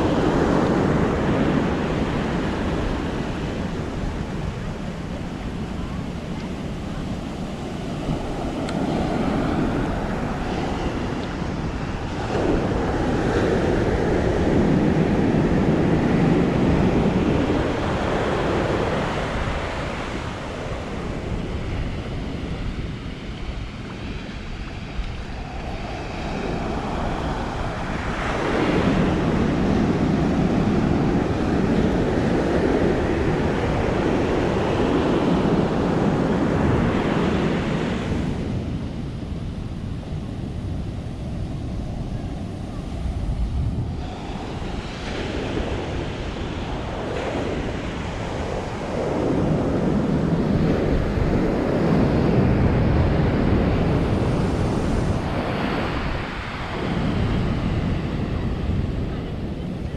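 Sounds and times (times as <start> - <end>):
ocean waves breaking on beach: 0.0 - 59.9
wind buffeting microphone: 0.0 - 59.9.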